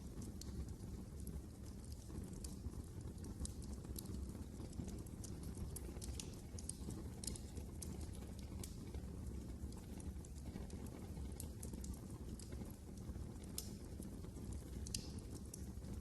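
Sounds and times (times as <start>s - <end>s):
fireplace fire crackling: 0.0s - 16.0s.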